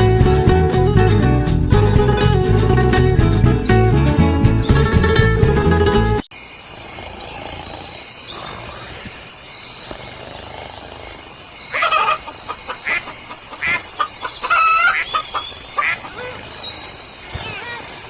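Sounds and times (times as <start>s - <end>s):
crickets chirring: 6.3s - 18.0s
hen clucking: 11.7s - 16.5s.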